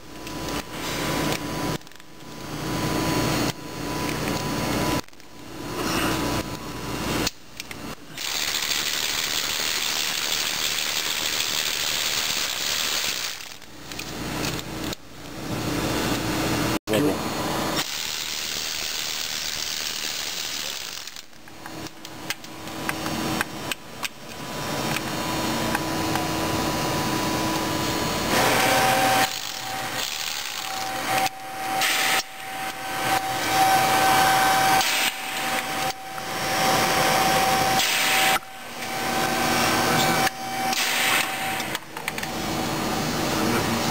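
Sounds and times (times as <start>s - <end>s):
cordless ratchet motor whining: 8.2s - 14.1s, 17.8s - 21.4s, 29.0s - 34.2s.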